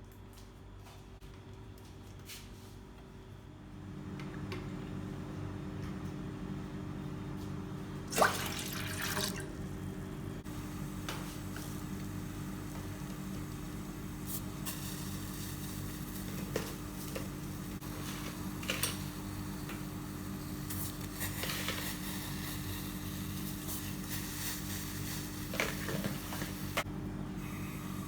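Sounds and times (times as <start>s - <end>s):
low mechanical hum: 0.0s - 28.0s.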